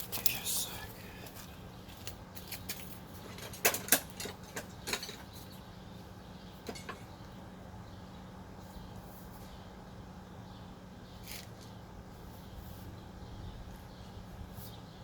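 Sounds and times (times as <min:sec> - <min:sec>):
metal tools clinking: 0:02.8 - 0:05.3.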